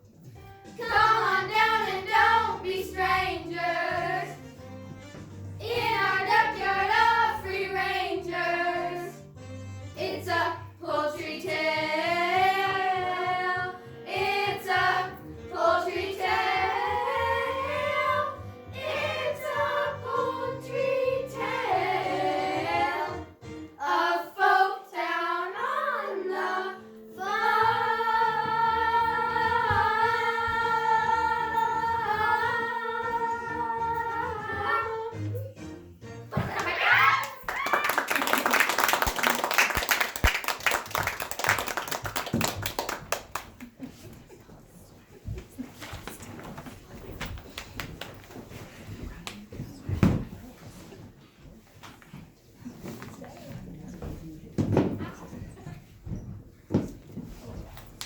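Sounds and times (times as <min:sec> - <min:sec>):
young voices singing: 0:00.7 - 0:04.4, 0:05.6 - 0:09.2, 0:10.0 - 0:35.4.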